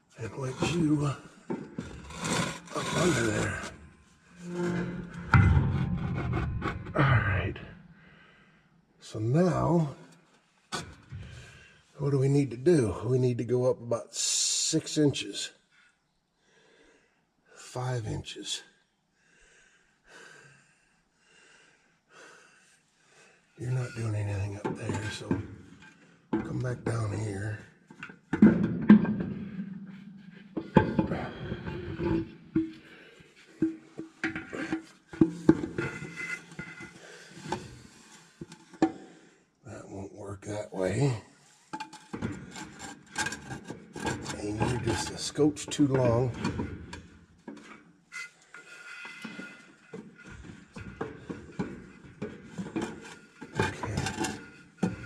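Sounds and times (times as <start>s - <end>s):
metal and lumber knocks and scrapes: 0.4s - 7.7s, 23.8s - 27.3s, 27.9s - 39.2s, 41.6s - 55.0s
heavy metal parts clanking: 4.4s - 7.7s, 48.9s - 55.0s.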